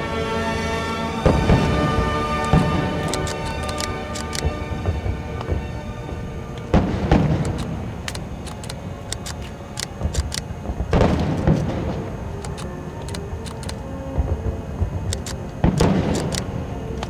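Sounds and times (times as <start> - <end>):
firework booms: 0.0 - 3.5, 4.4 - 8.4, 10.0 - 12.4, 14.1 - 17.0
crackling rumble: 0.0 - 17.0
firework pops and crackles: 9.9 - 12.6, 14.1 - 16.6.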